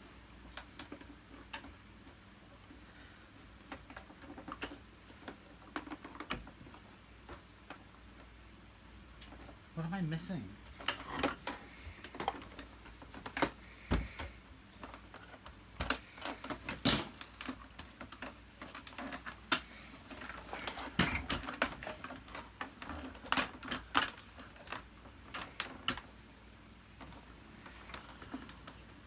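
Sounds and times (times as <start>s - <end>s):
plastic parts clicking and knocking: 3.6s - 7.9s, 10.8s - 26.1s.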